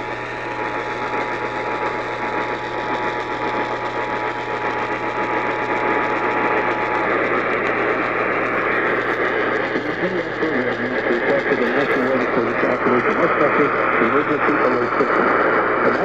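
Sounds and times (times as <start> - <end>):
radio static and hiss: 0.0 - 16.0
low hum: 5.8 - 16.0.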